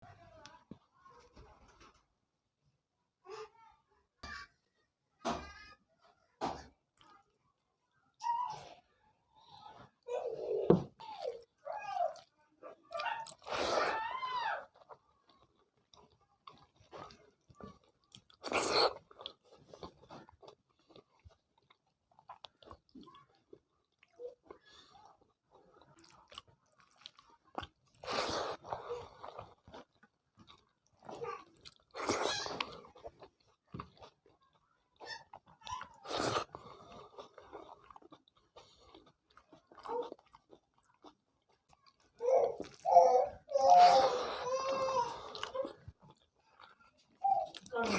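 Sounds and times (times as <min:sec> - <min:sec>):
person chewing food: 0:11.0 - 0:47.9.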